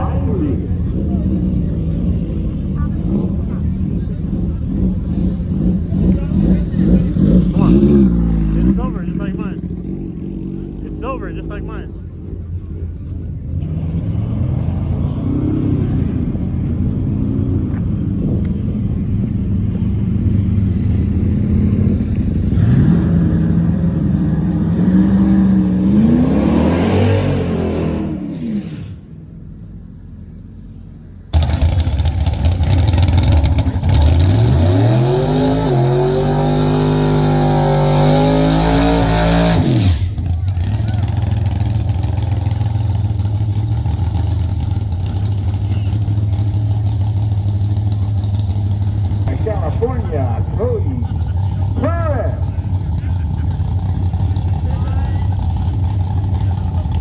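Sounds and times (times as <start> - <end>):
car engine accelerating through gears: 13.3 - 29.1, 31.4 - 57.0.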